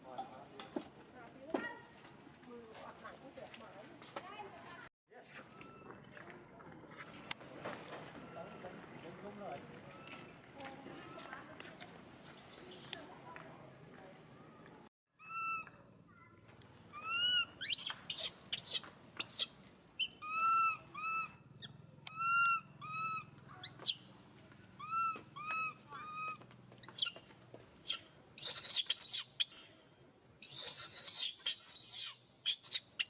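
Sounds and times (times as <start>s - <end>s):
arched animal calls: 16.9s - 24.1s, 24.8s - 27.2s, 27.8s - 29.6s.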